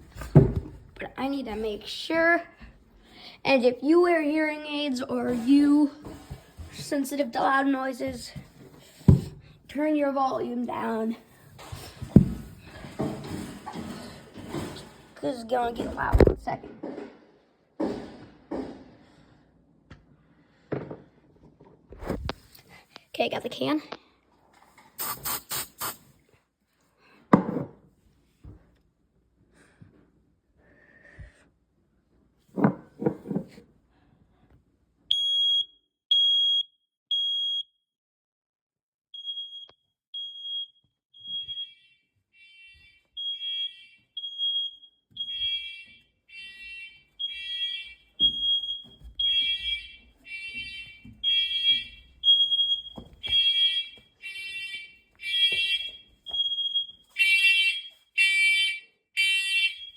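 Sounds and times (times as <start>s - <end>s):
smoke alarm beeping: 25.0s - 26.0s, 35.1s - 37.8s, 39.2s - 59.9s
other alarms beeping: 35.1s - 37.7s, 39.2s - 59.9s.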